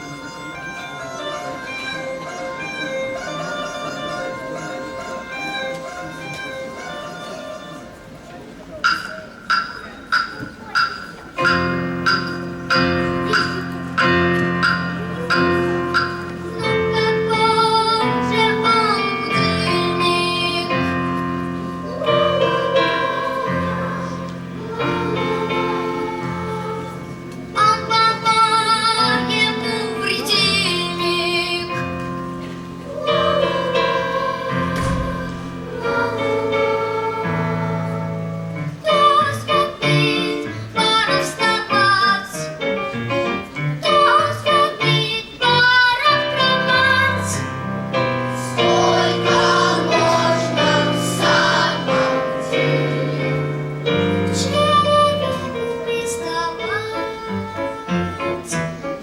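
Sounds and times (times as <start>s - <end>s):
instrumental accompaniment: 0.0s - 59.0s
choir singing: 12.5s - 41.8s, 45.9s - 57.7s.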